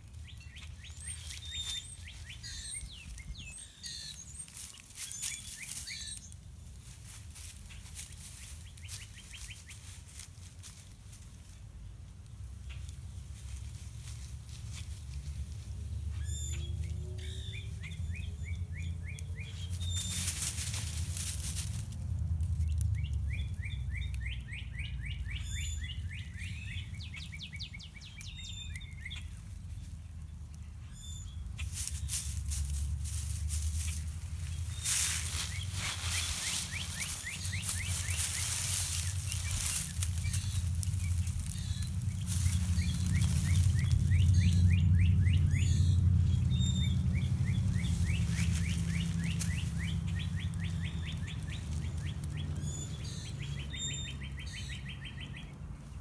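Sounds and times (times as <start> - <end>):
songbirds chirping and trilling: 0.0 - 56.0
steady low rumble: 29.4 - 56.0.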